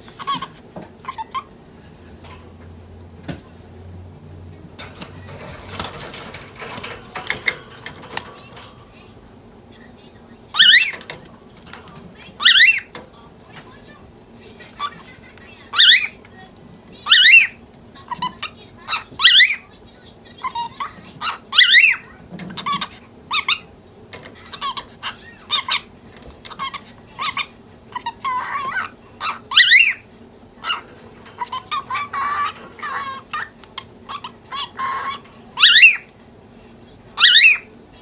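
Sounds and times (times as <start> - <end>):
scratchy bird chatter: 4.8 - 36.3, 37.0 - 38.0
cockatiel chirping: 10.5 - 11.2, 12.3 - 13.0, 17.0 - 17.6, 20.5 - 22.0, 26.5 - 30.0, 30.6 - 36.1, 37.2 - 37.7.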